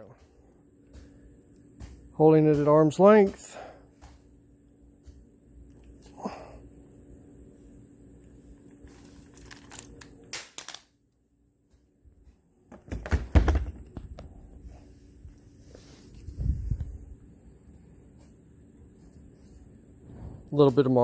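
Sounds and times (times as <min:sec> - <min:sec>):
magazine hitting the floor: 0:09.3 - 0:10.9, 0:12.7 - 0:14.1.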